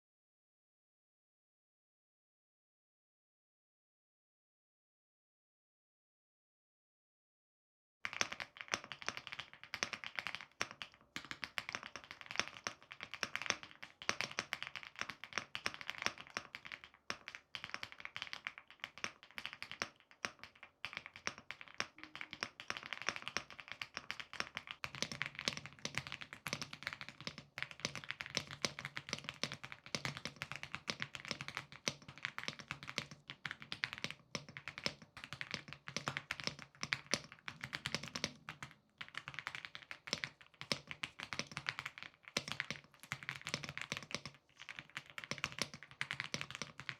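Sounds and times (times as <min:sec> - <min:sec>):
mechanical keyboard typing: 0:25.0 - 0:46.9.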